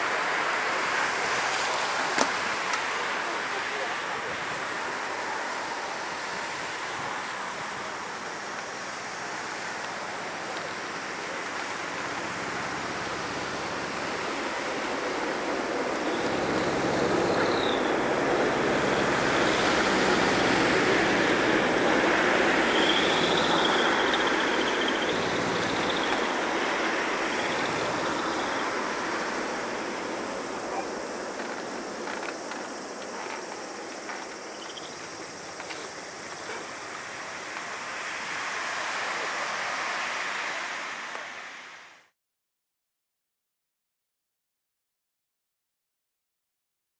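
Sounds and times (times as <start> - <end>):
jet engines roaring overhead: 0.0 - 41.9
thin high whine: 12.8 - 39.7.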